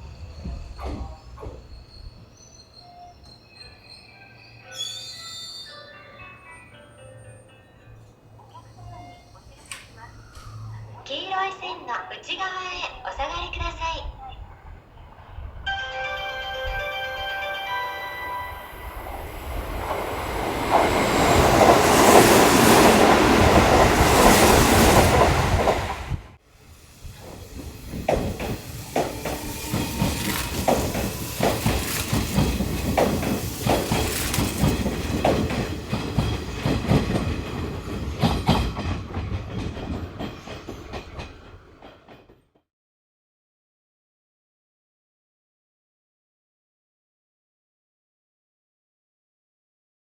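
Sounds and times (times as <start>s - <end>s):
electric train passing: 0.0s - 42.3s
train wheels clattering over rail joints: 26.9s - 42.6s.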